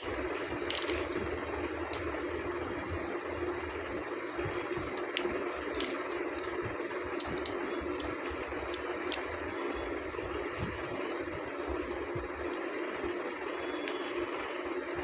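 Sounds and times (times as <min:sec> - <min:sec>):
steady background hum: 0:00.0 - 0:15.0
clicks and taps of packaging: 0:04.8 - 0:09.2.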